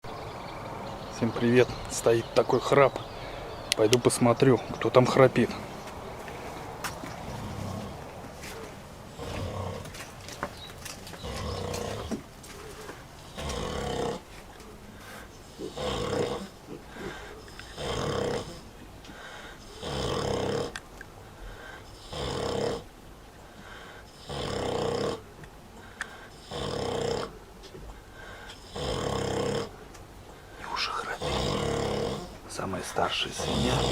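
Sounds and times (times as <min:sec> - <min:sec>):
pig snoring: 0:07.0 - 0:10.1, 0:11.2 - 0:12.2, 0:13.2 - 0:14.3, 0:15.0 - 0:20.8, 0:21.6 - 0:22.9, 0:23.7 - 0:27.4, 0:28.2 - 0:29.8, 0:30.7 - 0:33.9.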